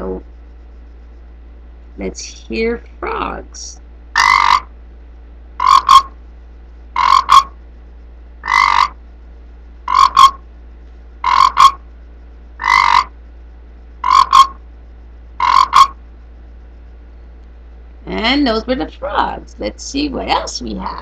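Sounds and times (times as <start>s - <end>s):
frog croaking: 4.1s - 4.7s, 5.6s - 6.2s, 6.9s - 7.6s, 8.4s - 9.0s, 9.8s - 10.4s, 11.2s - 11.8s, 12.6s - 13.2s, 14.0s - 14.6s, 15.4s - 16.1s, 20.3s - 21.0s.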